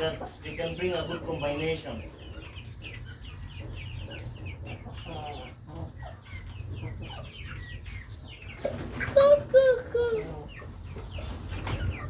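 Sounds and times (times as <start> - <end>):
chickens calling: 0.0 - 12.0
chickens clucking: 0.0 - 12.0.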